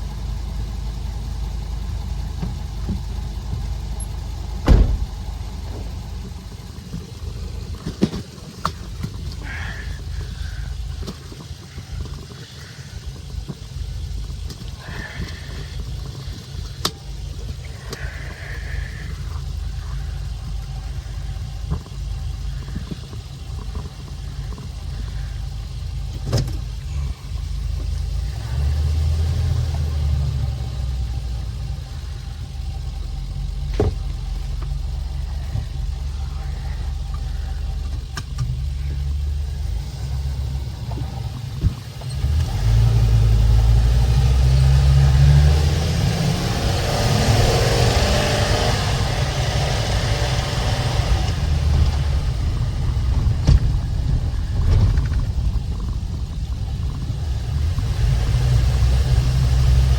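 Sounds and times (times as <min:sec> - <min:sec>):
engine and road rumble: 0:00.0 - 0:59.9
sharp knocks: 0:04.6 - 0:05.3.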